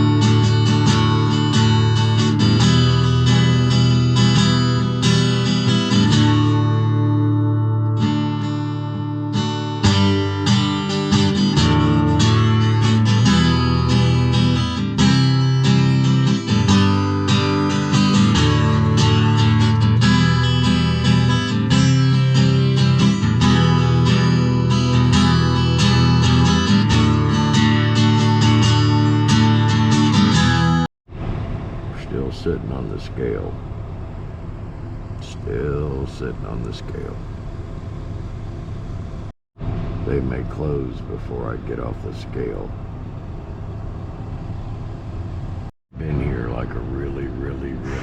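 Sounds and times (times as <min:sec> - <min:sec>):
strummed acoustic guitar music: 0:00.0 - 0:30.9.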